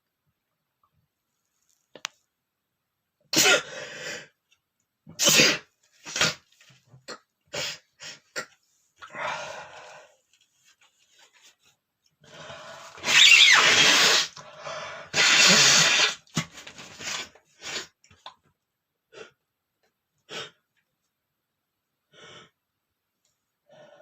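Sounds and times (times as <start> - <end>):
man sneezing: 3.3 - 3.7
breathy intake: 9.0 - 10.2.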